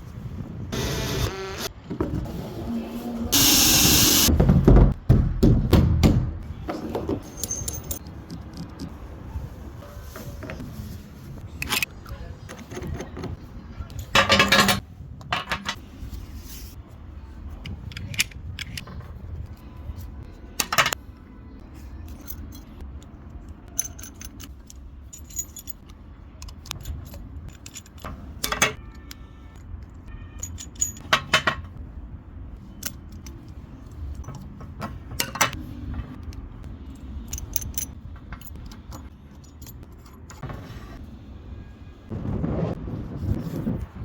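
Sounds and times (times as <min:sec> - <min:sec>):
metal parts clinking: 0:07.2 - 0:08.9, 0:12.5 - 0:15.8, 0:22.0 - 0:31.8, 0:32.7 - 0:40.4.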